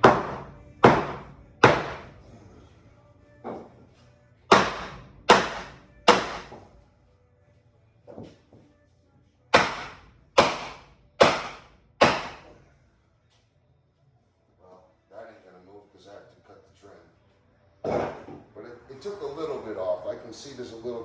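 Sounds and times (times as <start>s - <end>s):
hammer striking wooden block: 0.0s - 2.1s, 4.5s - 6.7s, 9.5s - 12.6s.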